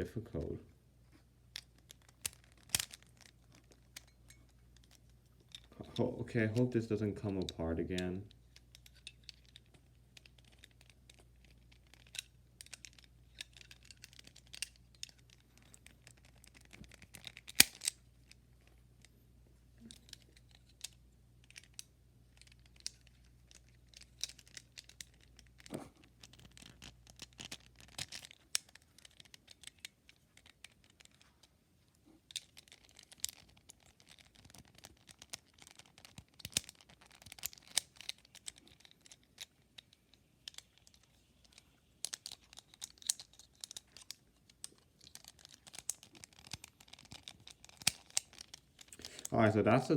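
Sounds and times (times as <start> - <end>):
plastic puzzle pieces clicking: 1.6 - 4.1, 7.4 - 18.7, 19.8 - 31.4, 32.3 - 49.3
sharp plastic snap: 17.5 - 18.0.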